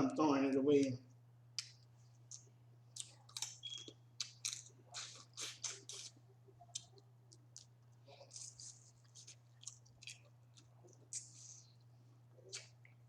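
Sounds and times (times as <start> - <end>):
chewing and smacking: 1.6 - 13.0.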